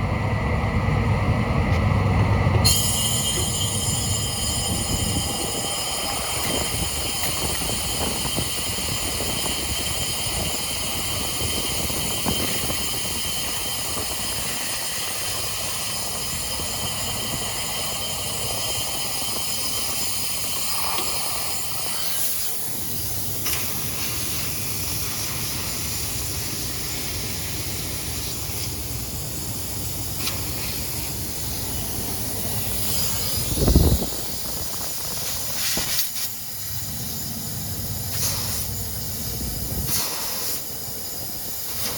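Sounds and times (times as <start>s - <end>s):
hiss of pressurised gas: 19.1s - 28.8s, 30.1s - 37.3s, 38.1s - 41.9s.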